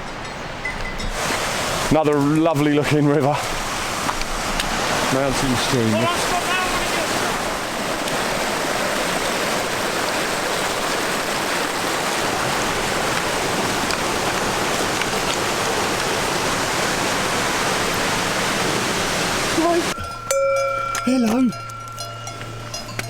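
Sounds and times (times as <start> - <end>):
stream rushing over rocks: 0.5 - 23.0.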